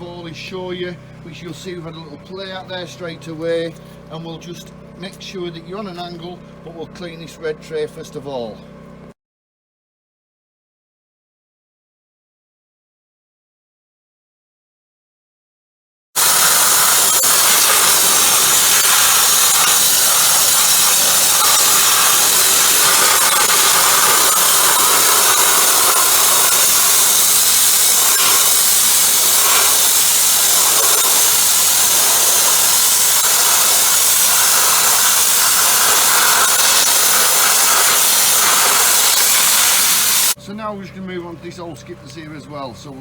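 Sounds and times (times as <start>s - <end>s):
sandblaster water jet hissing: 16.2s - 40.4s.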